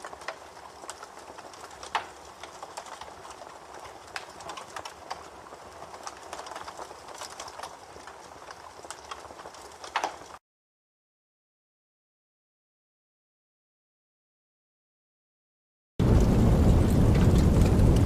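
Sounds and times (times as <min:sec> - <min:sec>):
campfire crackling: 0:00.0 - 0:10.4, 0:16.0 - 0:18.0.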